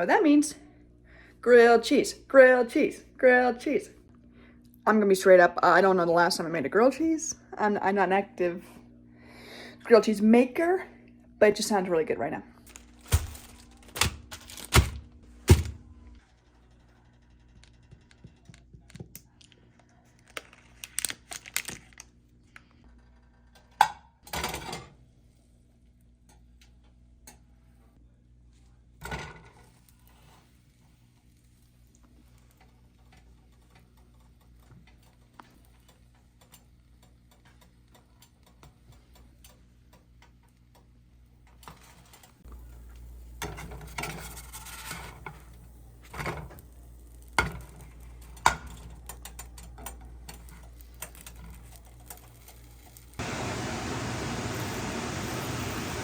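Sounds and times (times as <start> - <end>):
steady low hum: 6.4 - 13.9.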